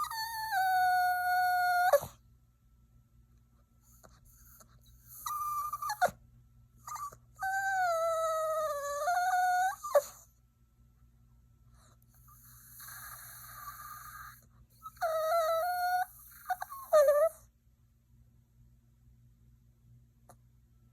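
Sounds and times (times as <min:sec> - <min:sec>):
puppy whining: 0:00.0 - 0:02.2, 0:04.0 - 0:06.2, 0:06.8 - 0:10.3, 0:12.3 - 0:17.5.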